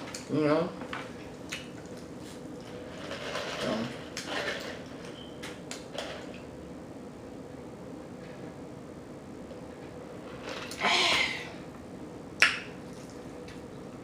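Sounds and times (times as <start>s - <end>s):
chewing and lip smacking: 1.2s - 2.7s.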